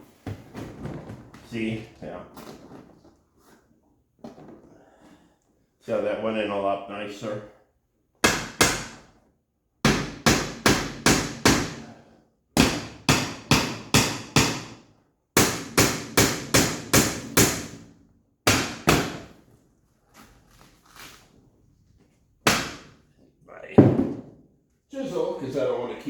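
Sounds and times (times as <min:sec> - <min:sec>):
hammer striking chisel on metal: 0:08.2 - 0:09.0, 0:09.8 - 0:11.8, 0:12.6 - 0:14.8, 0:15.4 - 0:17.8, 0:18.5 - 0:19.3.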